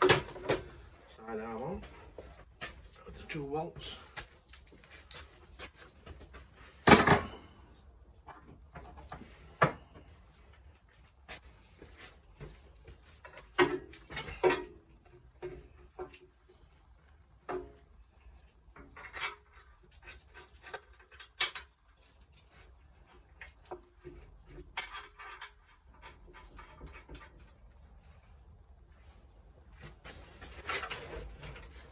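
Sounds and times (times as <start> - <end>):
metal parts clinking and knocking: 4.2 - 7.6, 18.8 - 22.1, 24.5 - 27.5.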